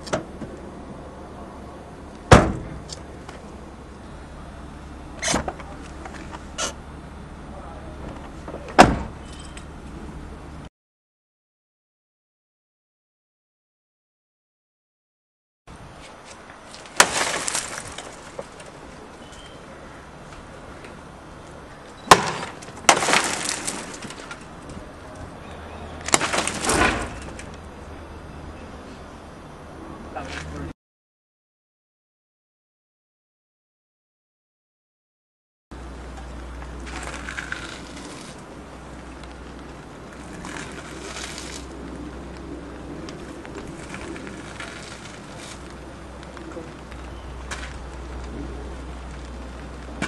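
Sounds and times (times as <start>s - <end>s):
debris scattering: 16.7s - 18.8s, 22.0s - 24.8s, 26.0s - 27.6s, 43.2s - 47.8s
props being crushed: 16.7s - 18.8s, 22.1s - 24.7s, 26.0s - 27.6s, 36.8s - 38.5s, 40.1s - 41.9s, 43.2s - 48.0s
brittle object smashing: 16.8s - 18.4s, 22.1s - 24.4s, 26.1s - 27.0s.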